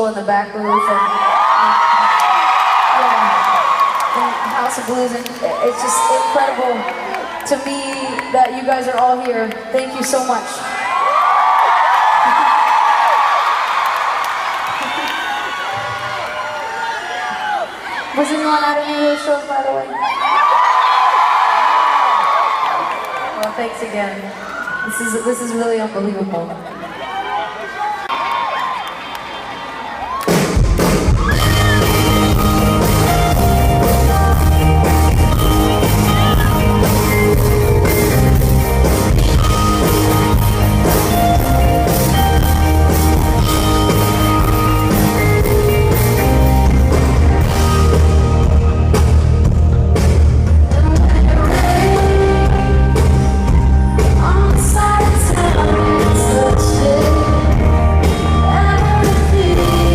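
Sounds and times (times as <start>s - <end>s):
live rock band: 30.0s - 59.9s
woman singing: 50.7s - 53.3s, 54.0s - 59.9s.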